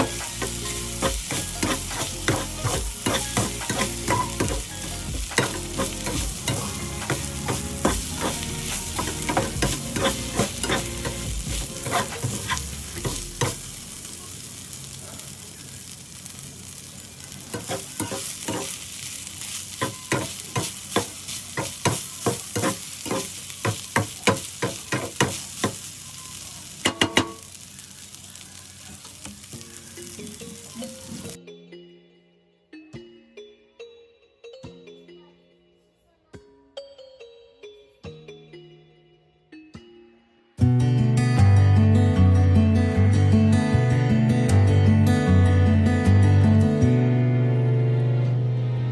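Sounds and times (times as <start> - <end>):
metal spatula scraping and clacking: 0.0 - 13.7, 17.5 - 25.9, 26.8 - 27.5
oil sizzling in pan: 0.0 - 31.4.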